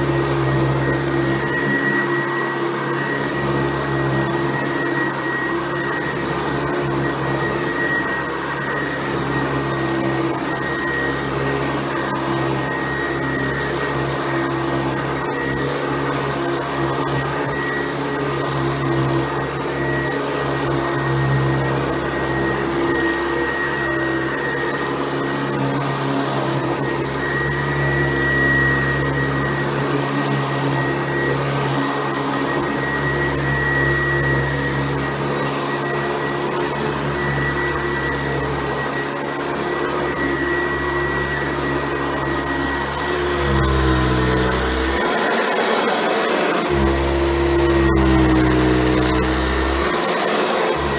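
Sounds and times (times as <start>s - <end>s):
vacuum cleaner running: 0.0s - 50.9s
high whine over motor hum: 40.7s - 45.4s, 46.6s - 50.9s.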